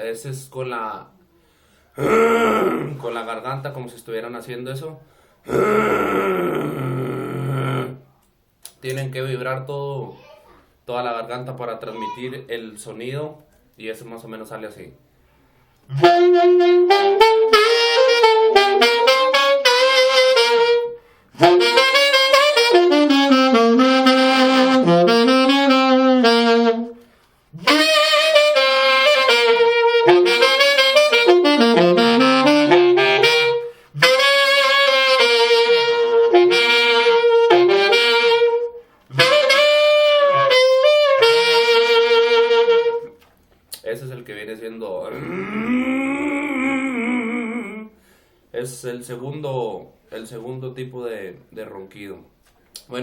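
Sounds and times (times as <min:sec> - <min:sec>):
saxophone with throat growl: 0:02.0 - 0:03.2, 0:05.5 - 0:08.1, 0:15.9 - 0:27.0, 0:27.6 - 0:43.0, 0:45.1 - 0:48.0.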